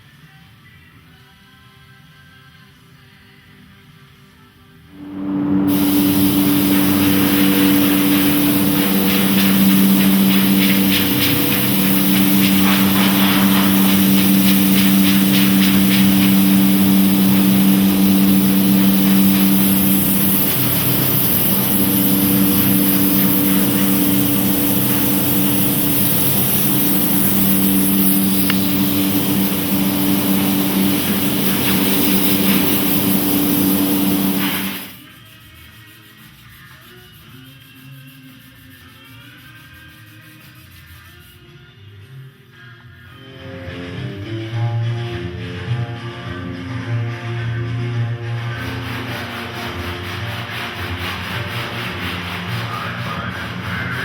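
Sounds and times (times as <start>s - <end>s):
bright hiss: 5.0s - 35.0s
shop machine motor humming: 5.0s - 35.0s.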